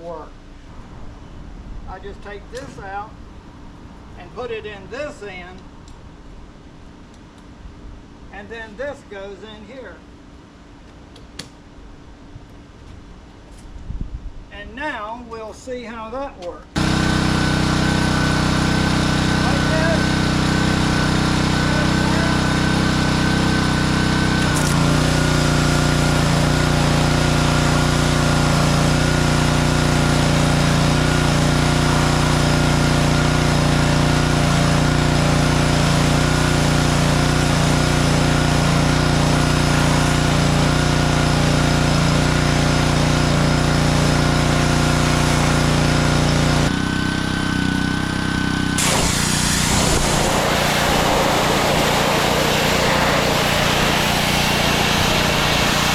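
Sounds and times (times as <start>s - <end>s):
pressure washer engine running: 16.8s - 55.9s
wand spraying water: 48.8s - 55.9s.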